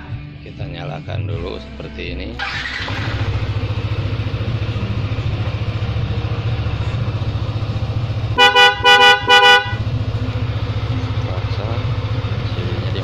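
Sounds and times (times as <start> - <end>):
motorcycle engine idling: 2.4 - 13.0
motorcycle horn toots: 8.1 - 10.1.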